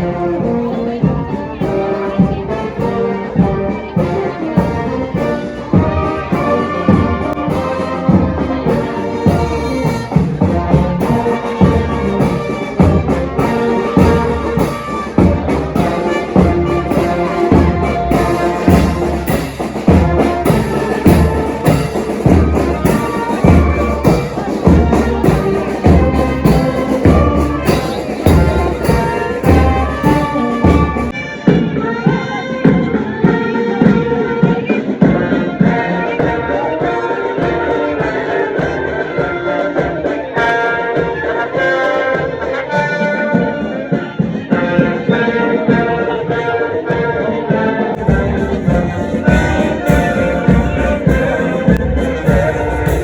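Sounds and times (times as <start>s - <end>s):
brass horns playing: 0.0s - 32.4s, 35.2s - 53.0s
regular drum beat: 0.2s - 32.0s, 47.9s - 53.0s.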